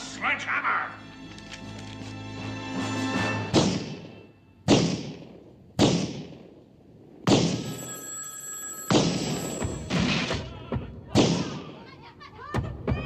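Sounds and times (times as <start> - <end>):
telephone bell ringing: 7.6 - 9.9.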